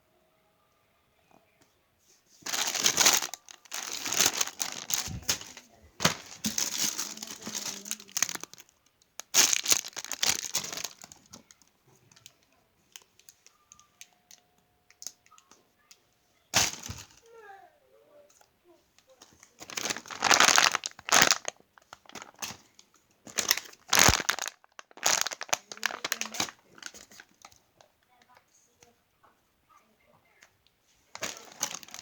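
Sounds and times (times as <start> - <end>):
plastic packaging crinkling: 2.4 - 11.6, 16.6 - 17.2, 19.4 - 27.9, 31.1 - 32.0.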